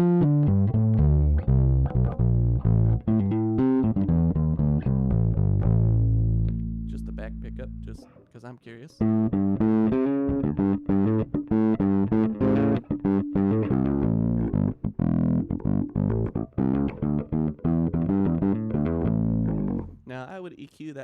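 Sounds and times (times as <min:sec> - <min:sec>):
overdriven electric bass notes: 0:00.0 - 0:08.1, 0:09.0 - 0:20.0.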